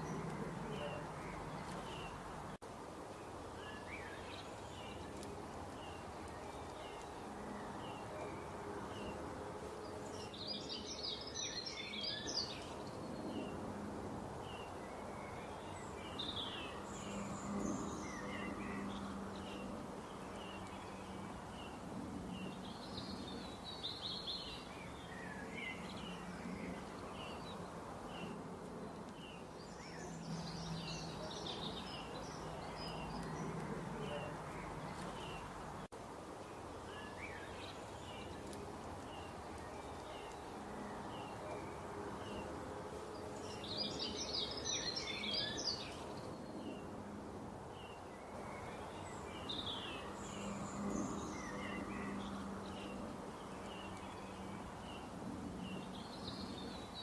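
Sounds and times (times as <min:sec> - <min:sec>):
birds chirping and twittering: 0:00.0 - 0:57.0
steady background noise: 0:00.0 - 0:57.0.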